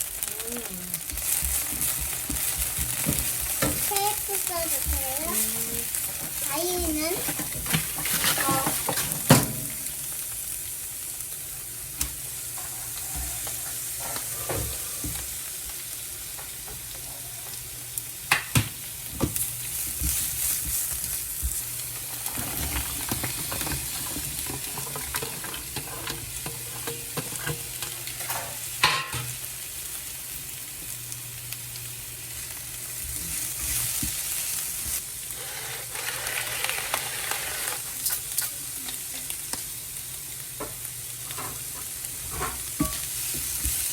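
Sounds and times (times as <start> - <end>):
food sizzling in a pan: 0.0 - 43.9
utensil scraping a pan: 4.6 - 9.9, 12.5 - 15.3, 22.0 - 29.3, 34.9 - 38.0, 41.3 - 43.6.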